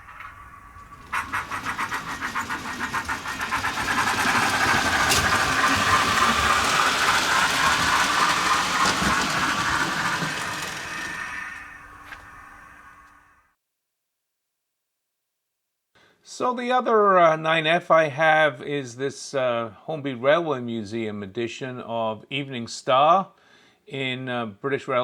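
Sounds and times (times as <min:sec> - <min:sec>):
steam locomotive chuffing: 0:00.0 - 0:13.2.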